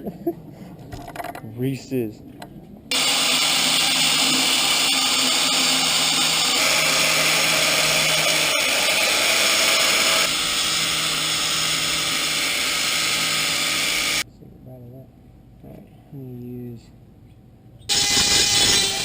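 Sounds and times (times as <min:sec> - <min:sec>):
electric grinder grinding metal: 0:02.9 - 0:14.2, 0:17.9 - 0:19.0.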